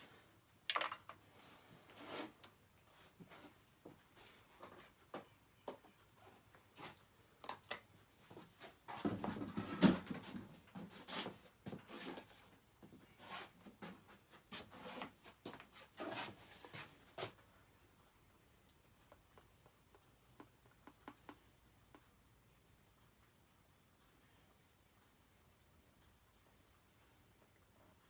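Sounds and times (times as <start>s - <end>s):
clatter and rustling: 8.9s - 10.9s.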